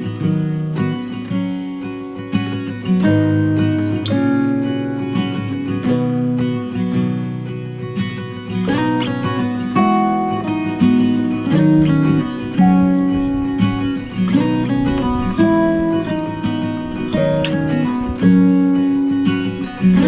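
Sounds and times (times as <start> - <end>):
acoustic guitar strumming chords: 0.0 - 20.0.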